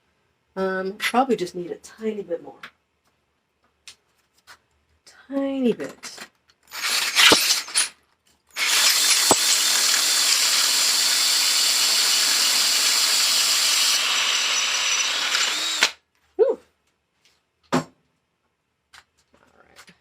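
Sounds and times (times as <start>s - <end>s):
power tool grinding metal: 6.7s - 7.9s, 8.5s - 16.0s.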